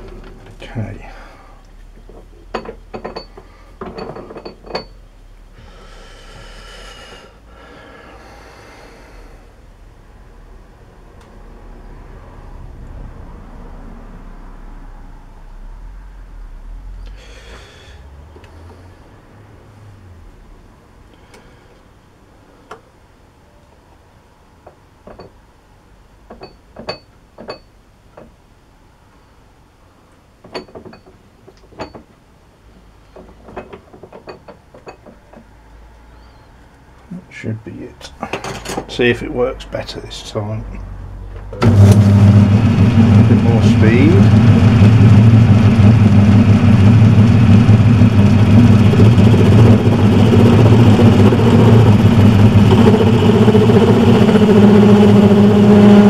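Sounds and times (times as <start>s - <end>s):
high machine whine: 41.6s - 56.0s.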